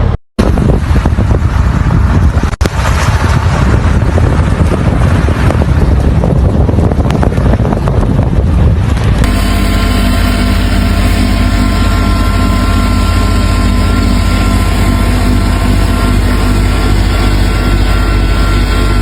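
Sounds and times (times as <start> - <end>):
vehicle engine droning: 9.2 - 19.0
faint steady tones: 9.3 - 19.0.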